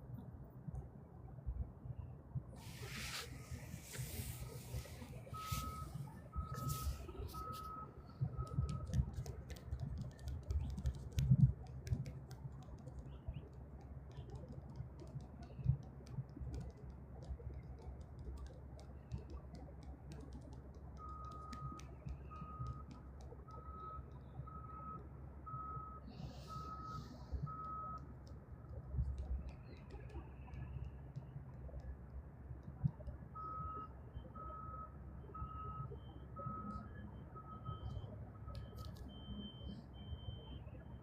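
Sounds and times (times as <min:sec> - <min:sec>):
scattered clicks: 0:05.2 - 0:24.2, 0:27.5 - 0:33.2, 0:37.7 - 0:39.8.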